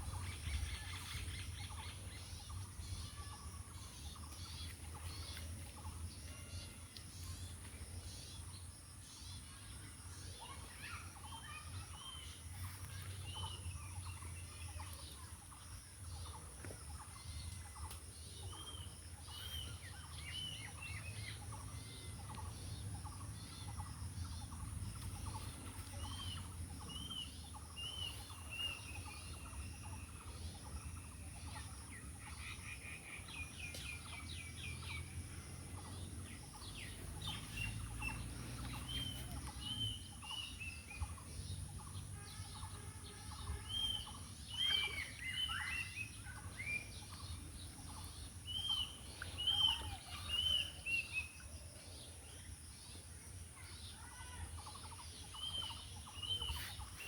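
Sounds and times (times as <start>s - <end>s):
birds chirping: 0.0s - 57.0s.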